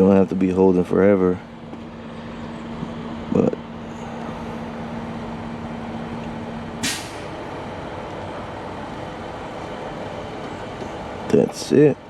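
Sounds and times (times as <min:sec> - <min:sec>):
truck cab hum: 0:00.0 - 0:12.0
air brake hiss: 0:06.8 - 0:07.4.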